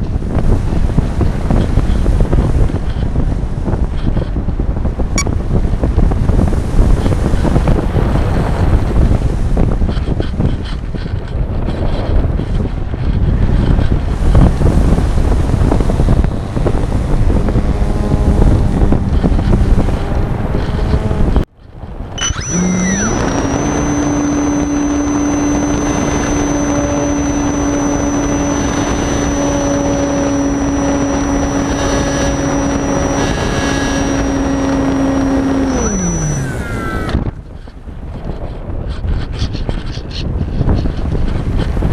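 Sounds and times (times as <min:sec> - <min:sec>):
wind rushing over microphone: 0:00.0 - 0:41.9
model motor humming and whining: 0:13.5 - 0:21.5, 0:22.1 - 0:37.4.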